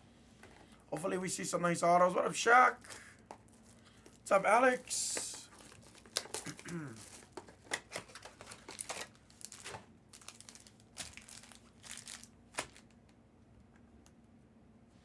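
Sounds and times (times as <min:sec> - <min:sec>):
wrappers torn and crinkled: 0:05.3 - 0:13.0.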